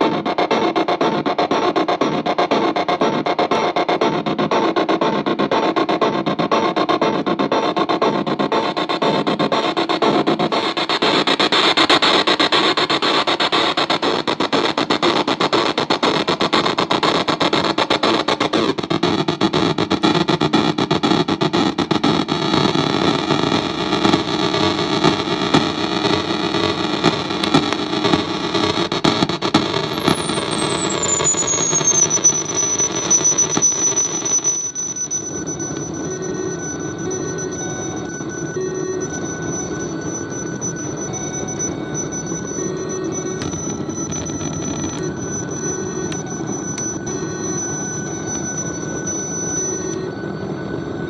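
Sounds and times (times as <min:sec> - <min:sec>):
glitchy squealing drum machine noise: 0:07.5 - 0:50.0
high whistle gliding down: 0:29.8 - 0:51.0.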